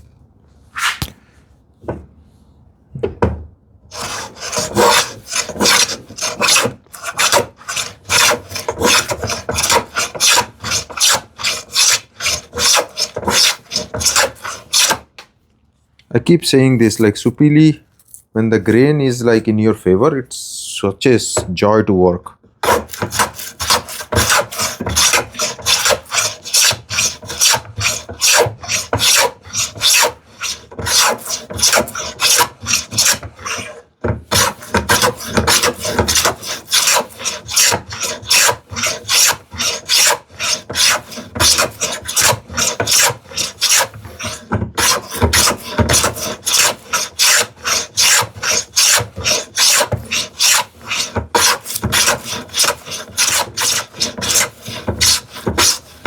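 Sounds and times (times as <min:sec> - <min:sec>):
plane shaving wood: 0:03.9 - 0:15.0, 0:22.6 - 0:56.0.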